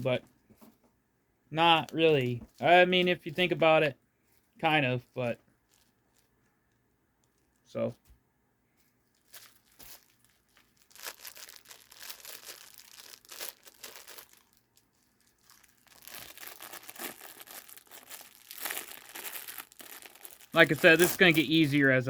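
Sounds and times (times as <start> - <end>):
plastic packaging crinkling and tearing: 5.6 - 6.3, 9.1 - 22.0.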